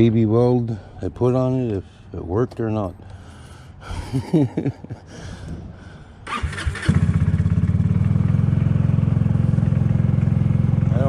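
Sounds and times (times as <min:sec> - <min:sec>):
scooter starter cranking: 0:06.2 - 0:07.9
scooter engine idling: 0:06.2 - 0:11.0.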